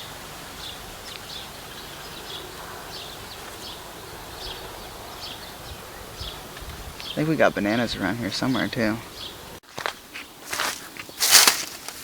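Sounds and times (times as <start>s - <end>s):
breeze rumbling on microphone: 0.0s - 9.6s.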